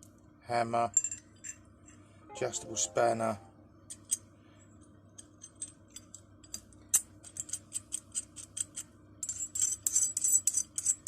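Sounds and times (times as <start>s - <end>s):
metal wrench parts clicking: 5.4s - 11.0s.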